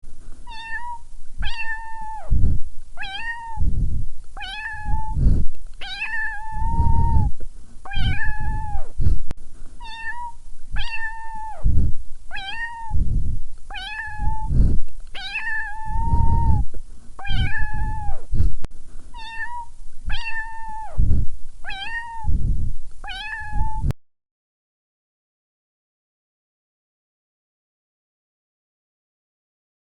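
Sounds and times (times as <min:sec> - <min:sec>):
cat meowing: 0:00.5 - 0:02.3, 0:03.0 - 0:03.6, 0:04.4 - 0:05.2, 0:05.8 - 0:07.3, 0:07.9 - 0:08.9, 0:09.8 - 0:11.7, 0:12.3 - 0:13.0, 0:13.7 - 0:14.5, 0:15.2 - 0:16.6, 0:17.2 - 0:18.3, 0:19.2 - 0:21.0, 0:21.6 - 0:22.3, 0:23.0 - 0:23.9
low rumble: 0:01.2 - 0:09.6, 0:10.4 - 0:18.7, 0:20.0 - 0:21.6, 0:22.2 - 0:23.9.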